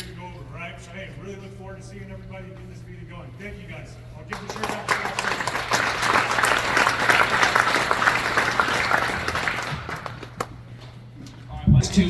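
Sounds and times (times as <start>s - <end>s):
crowd applauding: 4.3s - 10.6s.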